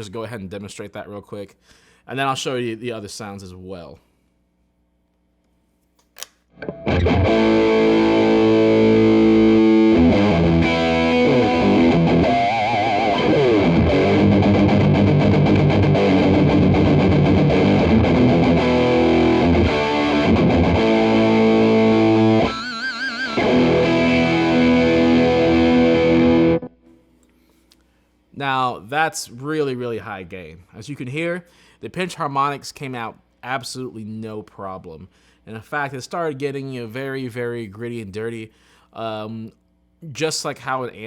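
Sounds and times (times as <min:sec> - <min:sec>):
distorted electric guitar: 0:06.6 - 0:26.8.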